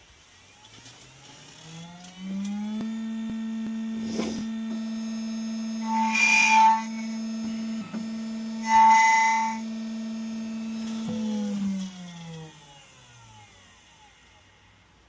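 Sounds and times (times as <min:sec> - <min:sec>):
key-cutting machine motor: 0:01.9 - 0:13.6.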